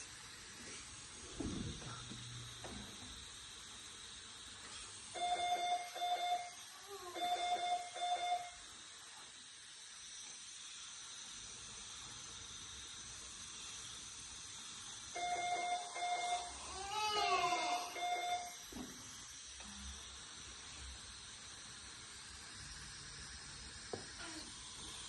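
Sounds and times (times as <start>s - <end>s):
medical alarm beeping: 5.2s - 6.6s, 7.2s - 8.6s, 15.2s - 16.6s, 17.9s - 18.6s.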